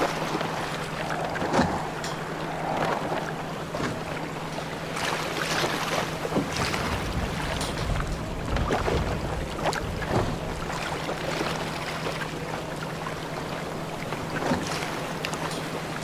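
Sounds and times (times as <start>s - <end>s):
wind noise: 0.0s - 10.8s
boat engine hum: 0.0s - 16.0s
water wash: 0.0s - 16.0s
small knocks and splashes: 3.7s - 12.4s, 13.2s - 16.0s.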